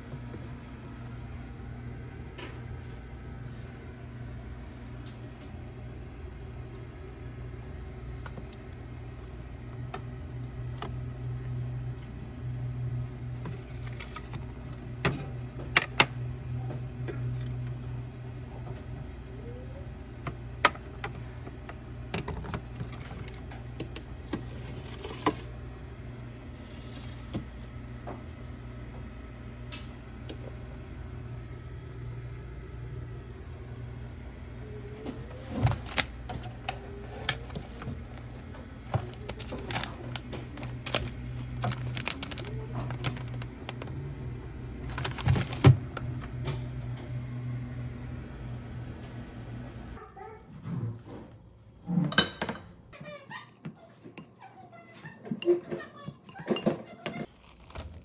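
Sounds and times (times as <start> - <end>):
steady low hum: 0.0 - 51.9
utensils and containers clinking: 35.2 - 44.2, 44.8 - 46.6, 54.0 - 58.0.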